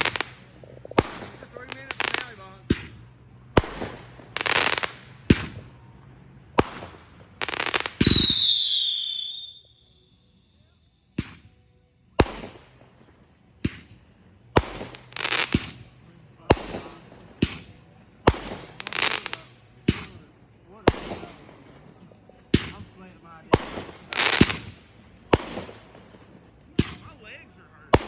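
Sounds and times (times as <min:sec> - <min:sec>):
firework bangs: 0:00.0 - 0:09.6, 0:12.2 - 0:28.0
firework crackling: 0:00.0 - 0:09.8, 0:12.2 - 0:28.0
whistling firework: 0:06.6 - 0:11.6, 0:23.6 - 0:25.9.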